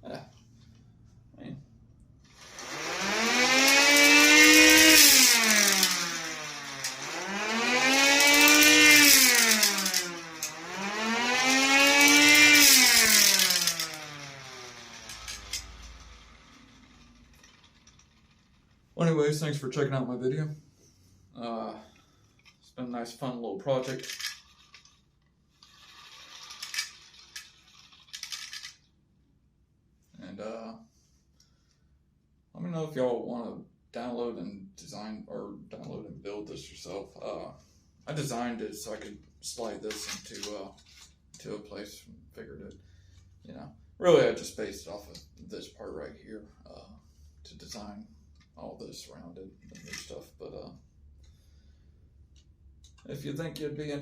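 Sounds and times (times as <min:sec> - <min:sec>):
hand-cranked siren wailing: 0:02.6 - 0:16.0
plastic parts rattling and scraping: 0:07.9 - 0:10.6, 0:11.9 - 0:18.7, 0:23.7 - 0:28.9, 0:39.6 - 0:41.2, 0:49.6 - 0:50.3.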